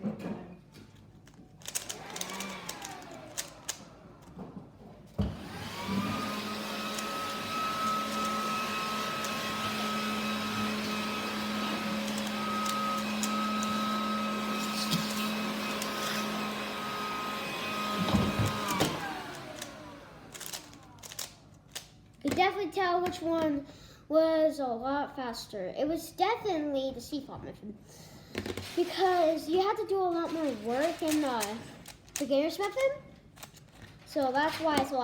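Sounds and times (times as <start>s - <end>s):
electric motor whine: 1.8s - 4.2s, 5.2s - 21.0s.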